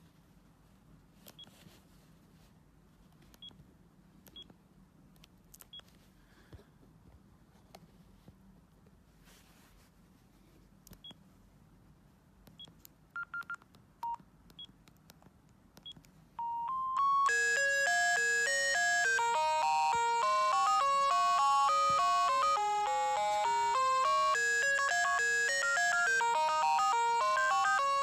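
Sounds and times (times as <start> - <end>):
mobile phone beeps: 13.2 - 14.2, 16.4 - 28.0
polyphonic phone ringtone: 16.4 - 28.0.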